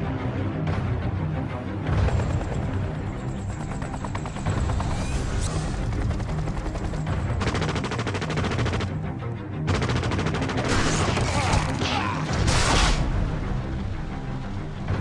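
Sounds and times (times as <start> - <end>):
low film score music: 0.0 - 15.0
automatic gunfire: 9.7 - 11.6.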